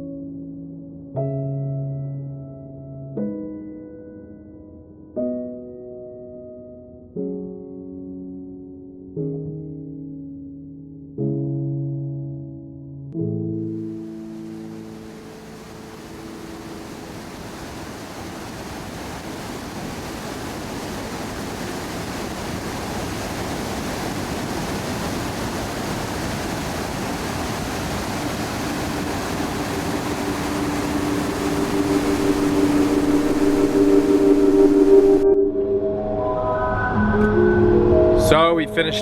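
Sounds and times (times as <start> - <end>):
waterfall rushing: 13.8 - 35.4
sustained music notes: 29.2 - 39.0.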